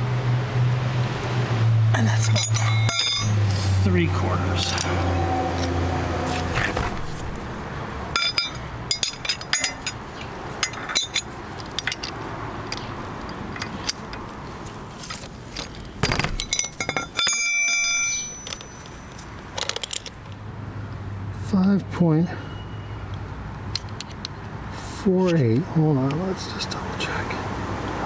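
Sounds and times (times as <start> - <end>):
metal tools clinking: 2.0 - 7.4, 8.1 - 20.4.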